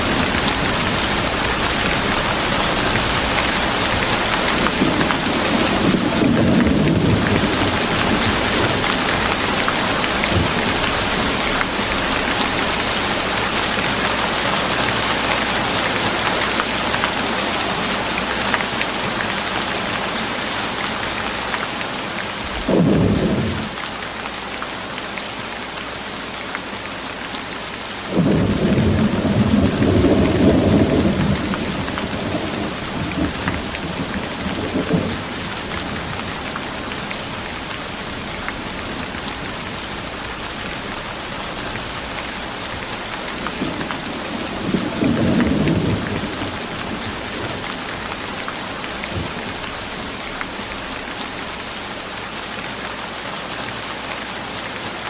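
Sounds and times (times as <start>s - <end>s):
thunder rumble: 0.0s - 14.2s, 22.4s - 23.8s, 28.1s - 51.4s
rain hiss: 0.0s - 55.0s.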